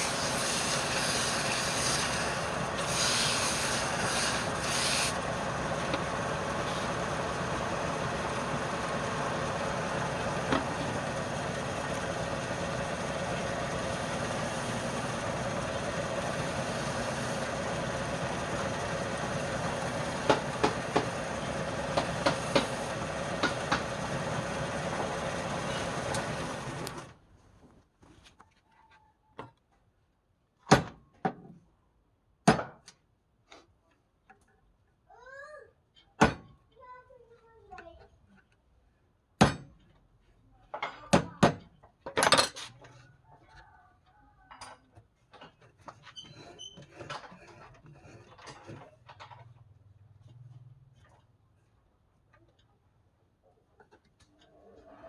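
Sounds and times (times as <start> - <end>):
motor running: 0.0 - 27.1.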